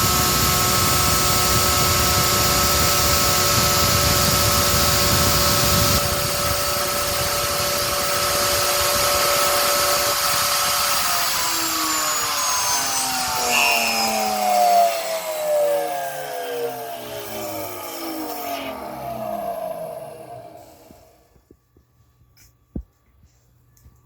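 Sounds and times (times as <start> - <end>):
milling machine spindle whining: 0.0 - 21.2
machine rumble: 12.5 - 21.8.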